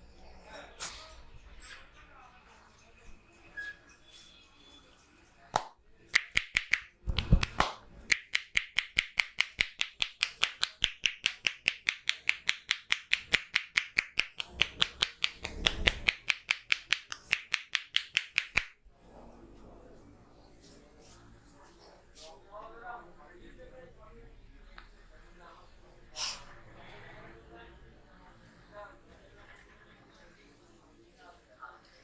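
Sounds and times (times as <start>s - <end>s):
hands slapping body: 5.5s - 18.8s.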